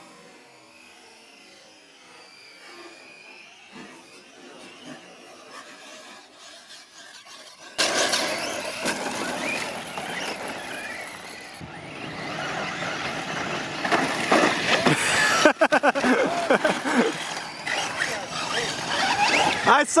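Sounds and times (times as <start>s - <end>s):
rc car motors whining: 0.0s - 20.0s
tyres hissing on dirt: 13.9s - 20.0s.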